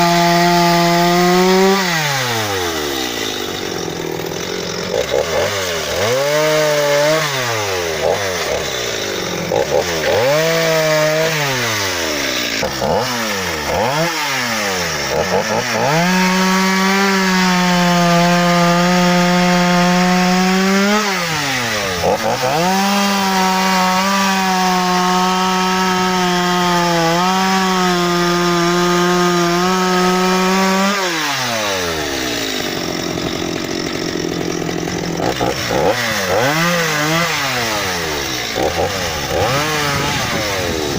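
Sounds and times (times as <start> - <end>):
chainsaw engine revving: 0.0 - 40.9.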